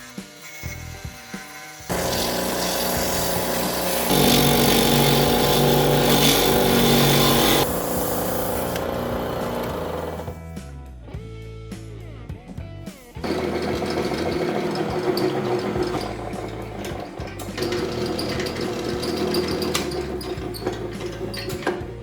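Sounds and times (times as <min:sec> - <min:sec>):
turning tool cutting wood: 0:00.0 - 0:10.4, 0:13.2 - 0:22.0
wood lathe running: 0:01.9 - 0:10.4, 0:13.2 - 0:21.8.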